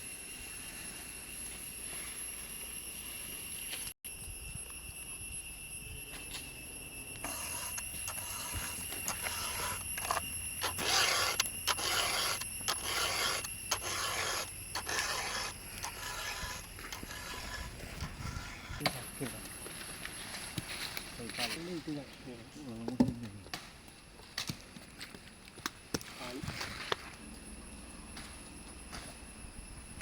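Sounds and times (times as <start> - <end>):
steady high-pitched tone: 0.0 - 20.4
saw cutting wood: 7.2 - 19.1.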